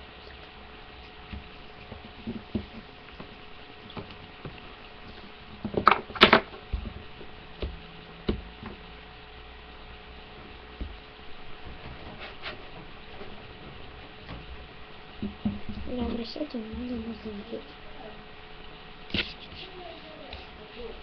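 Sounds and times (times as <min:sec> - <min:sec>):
faint electrical hum: 0:00.0 - 0:21.0
plastic clatter: 0:05.6 - 0:07.1.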